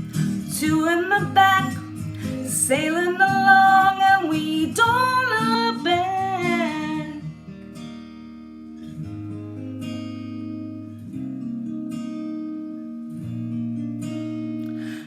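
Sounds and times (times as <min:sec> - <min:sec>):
acoustic guitar strumming chords: 0:00.0 - 0:15.0
person singing: 0:00.3 - 0:07.2.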